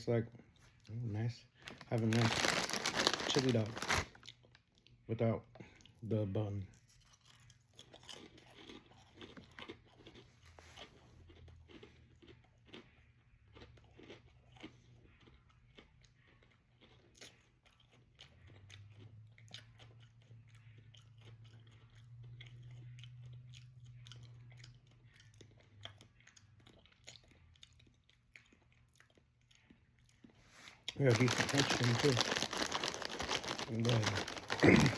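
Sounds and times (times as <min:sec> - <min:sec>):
crackers being chewed: 0:00.4 - 0:06.0, 0:06.6 - 0:34.9.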